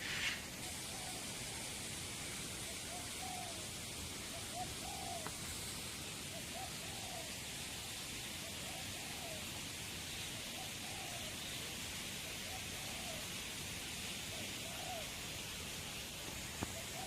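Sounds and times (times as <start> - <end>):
faint short bird calls: 0.0 - 1.3
steady hiss: 0.0 - 17.0.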